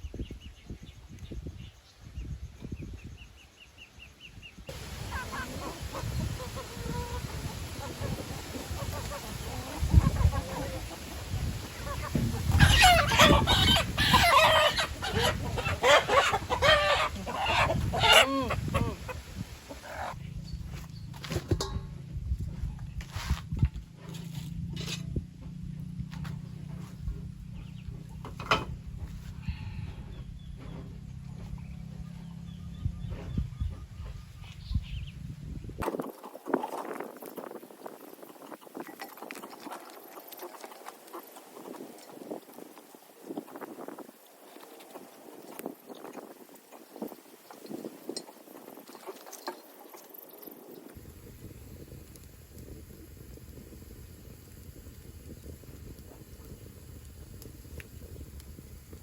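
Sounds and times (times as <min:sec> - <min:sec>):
chickens clucking: 0:04.7 - 0:20.2, 0:35.8 - 0:51.0.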